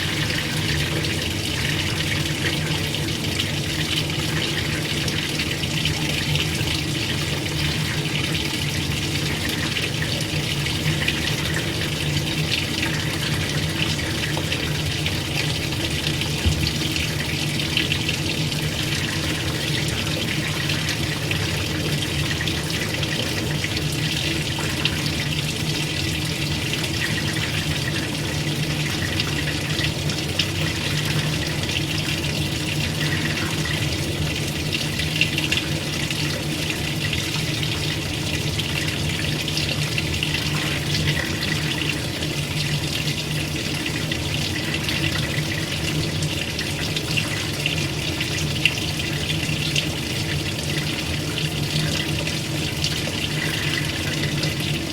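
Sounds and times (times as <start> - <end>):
water splashing in washing machine: 0.0 - 54.9.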